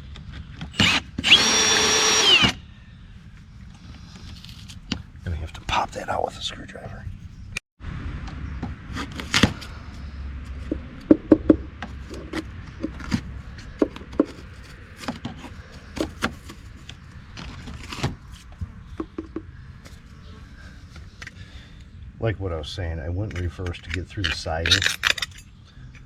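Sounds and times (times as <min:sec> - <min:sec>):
screwdriver prying and scraping: 0:00.8 - 0:02.6, 0:23.8 - 0:25.5.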